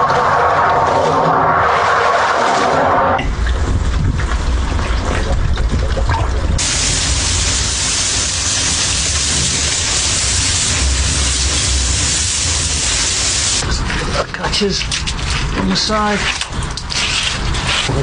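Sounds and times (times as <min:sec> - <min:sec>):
low machine rumble: 0:00.0 - 0:15.6
pressurised water spraying: 0:06.6 - 0:13.7.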